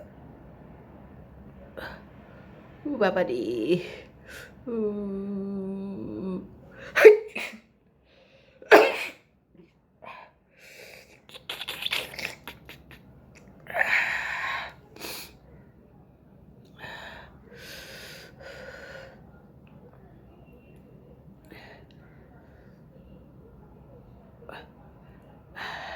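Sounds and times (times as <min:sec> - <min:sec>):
person sneezing: 0:06.9 - 0:07.6, 0:08.7 - 0:09.2.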